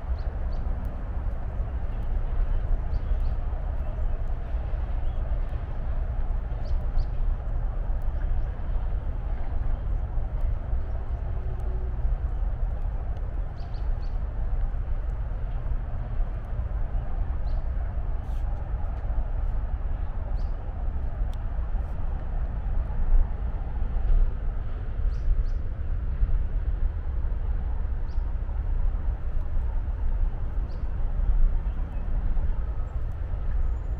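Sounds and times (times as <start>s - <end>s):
distant highway traffic rumble: 0.0s - 33.9s.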